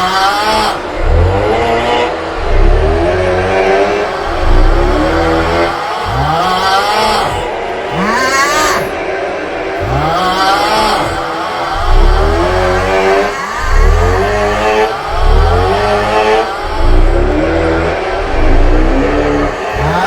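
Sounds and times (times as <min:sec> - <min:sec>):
booming bass: 0:01.0 - 0:06.3, 0:11.8 - 0:20.0.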